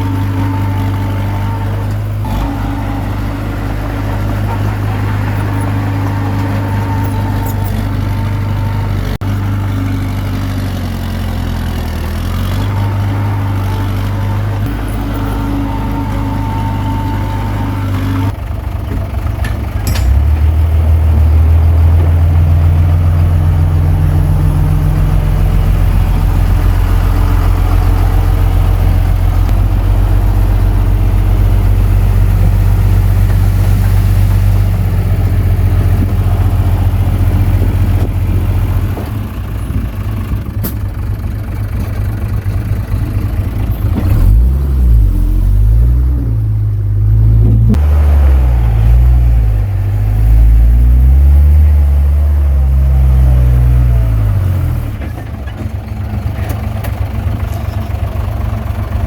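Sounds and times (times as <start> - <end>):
bulldozer diesel engine running: 0.0 - 59.0.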